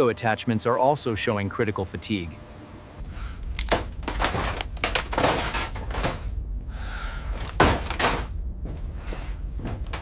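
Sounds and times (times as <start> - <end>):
steady low rumble: 2.4 - 10.0
knocks and clatter: 3.7 - 6.3.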